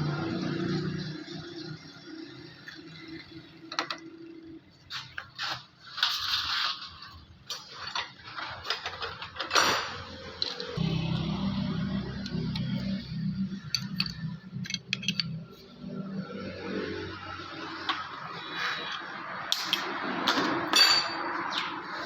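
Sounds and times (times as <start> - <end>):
metal parts clicking and knocking: 13.6 - 15.7.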